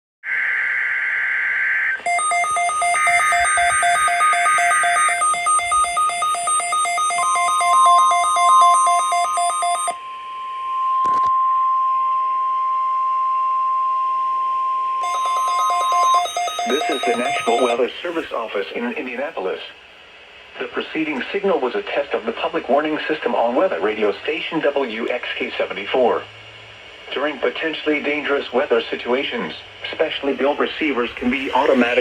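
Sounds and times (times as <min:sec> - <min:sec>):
steady warning alarm tone: 0:02.0 - 0:18.0
fast electronic beeping: 0:02.1 - 0:10.0, 0:15.0 - 0:17.8
screechy digital data bursts: 0:02.1 - 0:10.0, 0:15.0 - 0:17.8.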